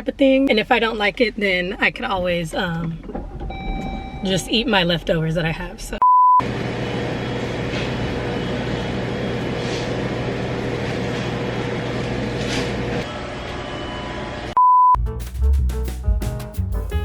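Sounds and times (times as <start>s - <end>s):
high electronic beep: 14.6s - 15.0s
music: 15.0s - 17.0s.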